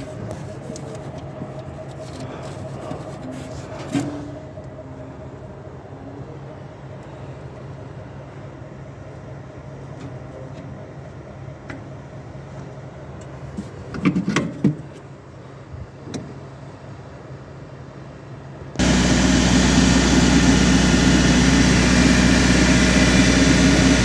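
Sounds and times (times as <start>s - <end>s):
machine humming: 18.8s - 24.0s.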